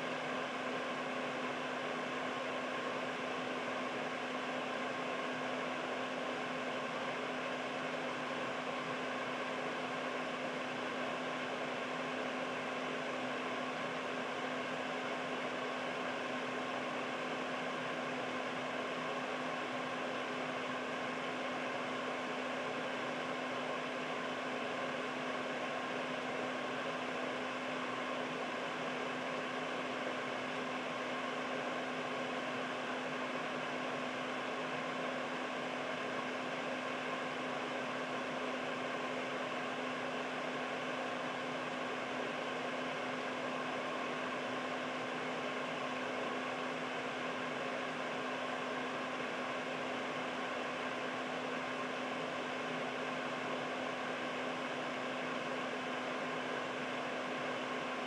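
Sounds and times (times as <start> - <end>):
air purifier fan running: 0.0 - 58.0.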